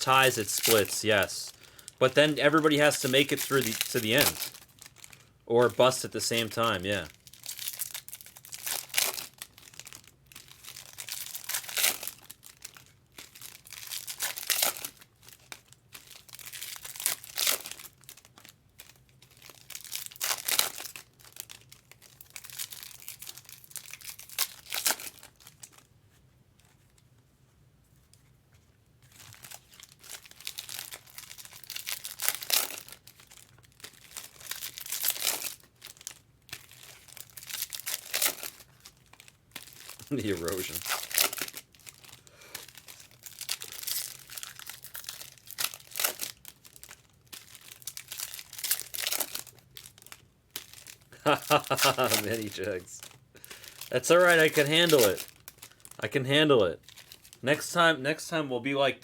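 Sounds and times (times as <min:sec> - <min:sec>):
foil wrappers tearing and crinkling: 0:00.0 - 0:25.9, 0:29.0 - 0:57.7.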